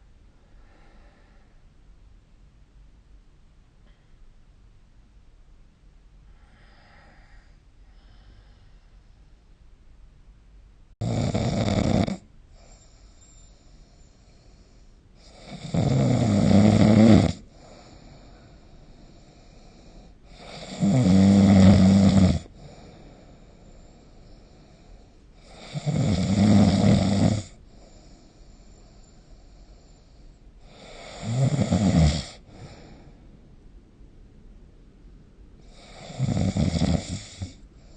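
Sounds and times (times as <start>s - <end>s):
soft breathing: 0.0s - 1.8s, 6.2s - 9.4s, 12.5s - 15.6s, 17.4s - 20.8s, 22.4s - 25.9s, 27.5s - 31.4s, 32.4s - 33.6s
faint background hiss: 0.0s - 37.9s
person snoring: 11.0s - 12.9s, 15.2s - 23.6s, 24.3s - 28.4s, 30.6s - 33.1s, 35.6s - 37.6s.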